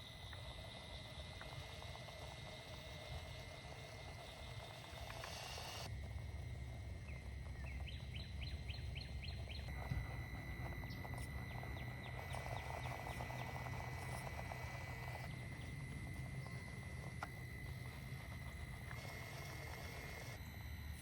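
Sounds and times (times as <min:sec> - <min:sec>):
bird chirping: 0:07.0 - 0:16.8.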